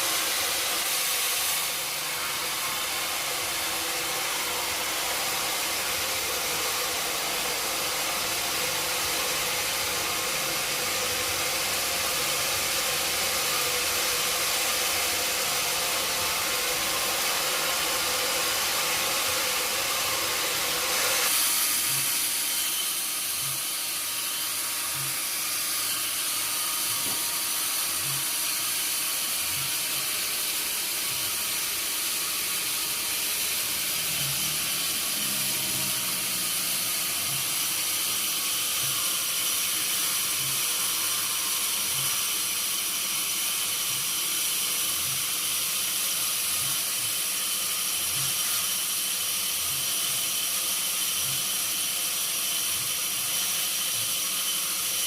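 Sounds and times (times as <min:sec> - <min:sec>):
sawmill machinery whining: 0:00.0 - 0:55.0.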